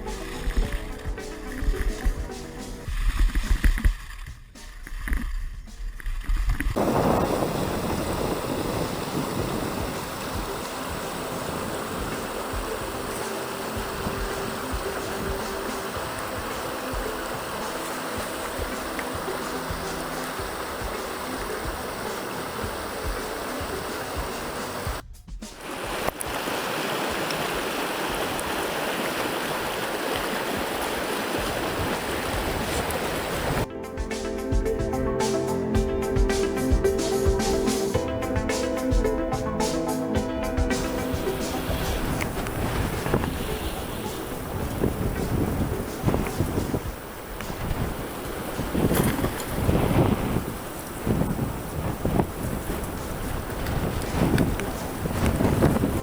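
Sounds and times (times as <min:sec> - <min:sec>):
wind buffeting microphone: 0:06.7 - 0:25.0, 0:25.6 - 0:33.7, 0:40.4 - 0:56.0
river water rushing: 0:06.8 - 0:25.0, 0:25.6 - 0:33.7, 0:39.6 - 0:56.0.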